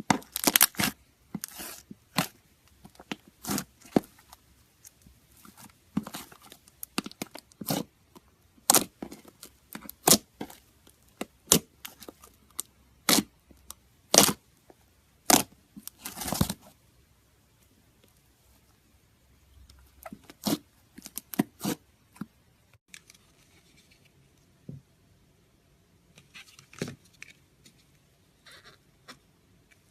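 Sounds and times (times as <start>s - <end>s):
slime crackling: 0.0s - 7.9s, 8.6s - 13.3s.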